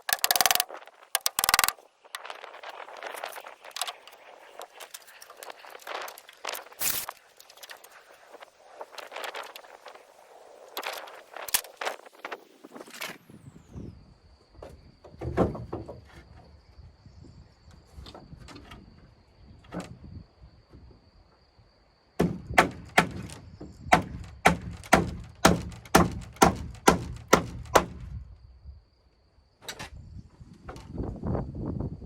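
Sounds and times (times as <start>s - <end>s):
hammering on wood: 22.2s - 28.1s.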